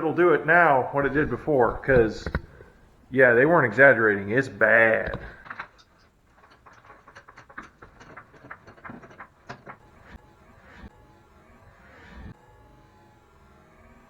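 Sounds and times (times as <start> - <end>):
faint clicks and knocks: 1.0 - 3.2, 4.8 - 10.2.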